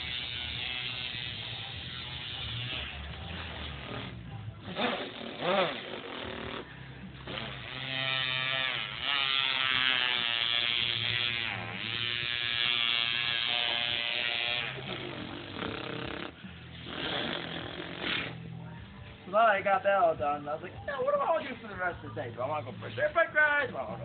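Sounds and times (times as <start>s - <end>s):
person imitating engine with mouth: 3.6s - 6.7s, 14.6s - 18.4s.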